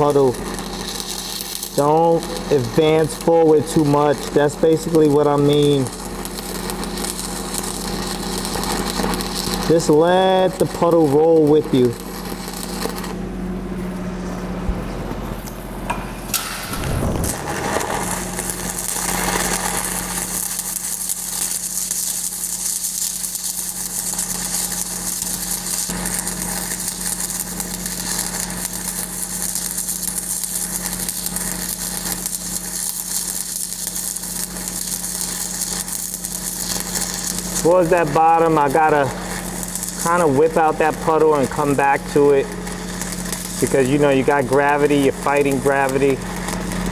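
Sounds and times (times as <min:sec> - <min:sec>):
welding arc crackling: 0:00.0 - 0:13.9, 0:16.3 - 0:46.9
low machine hum: 0:00.0 - 0:20.4.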